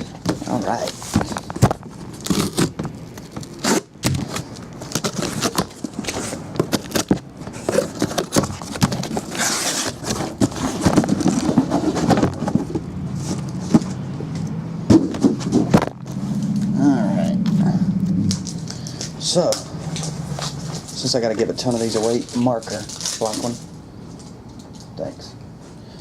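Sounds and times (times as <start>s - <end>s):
plastic wrapping rustling: 0.0s - 14.0s, 18.2s - 24.9s
cardboard boxes being handled: 0.0s - 14.1s.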